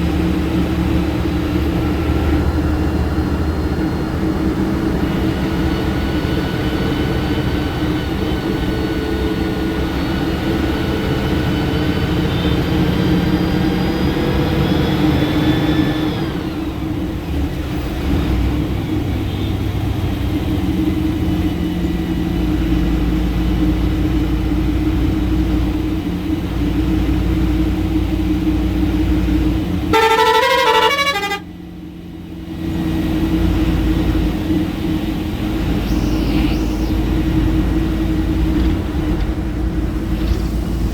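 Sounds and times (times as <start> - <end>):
bus engine running: 0.0 - 40.9
multi-tone horn: 29.9 - 31.5.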